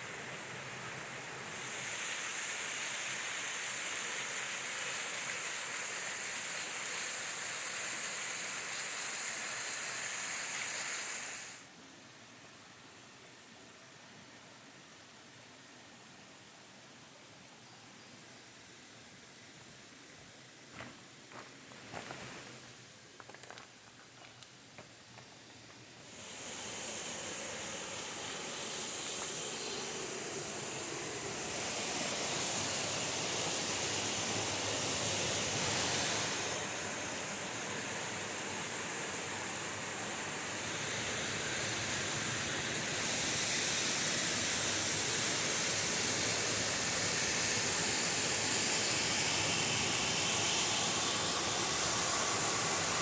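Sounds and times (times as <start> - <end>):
waterfall rushing: 26.1 - 53.0.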